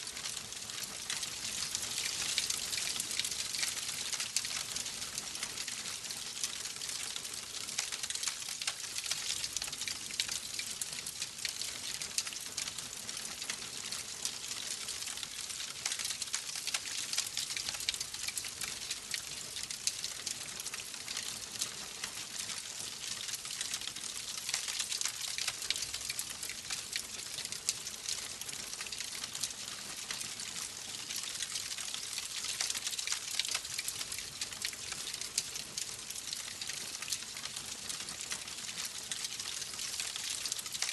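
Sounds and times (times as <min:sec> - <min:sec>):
wood fire crackling: 0:00.2 - 0:04.7.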